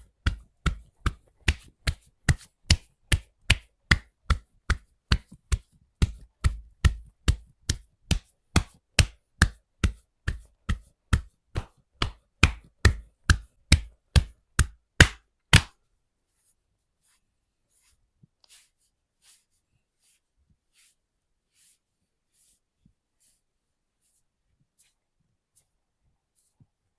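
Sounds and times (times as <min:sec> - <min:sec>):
hands slapping body in massage: 0:00.0 - 0:15.8.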